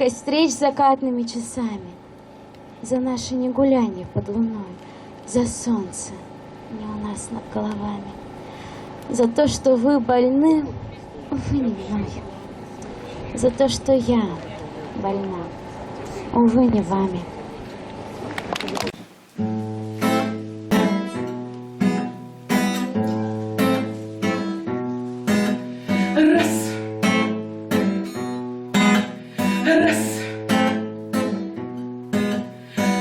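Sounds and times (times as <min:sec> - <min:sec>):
acoustic guitar strumming: 0:19.4 - 0:33.0.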